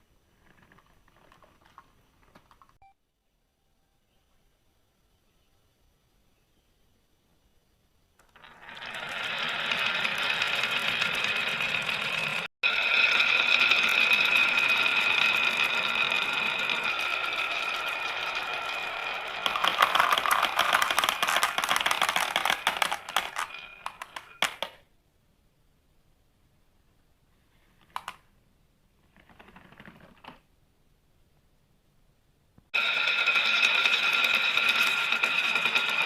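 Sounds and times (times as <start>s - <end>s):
marbles rolling down a track: 8.2s - 24.8s, 32.8s - 36.0s
marble clicks: 13.0s - 24.8s.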